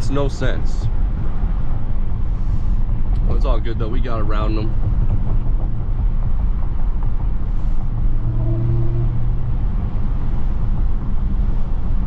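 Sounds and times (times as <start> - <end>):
car engine rumbling: 0.0 - 12.0
road and tyre noise: 0.0 - 12.0.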